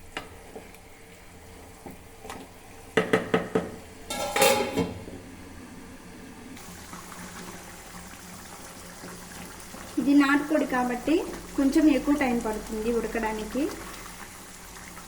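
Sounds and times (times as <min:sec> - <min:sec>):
metal spoon scraping cooking pot: 0:04.1 - 0:05.0.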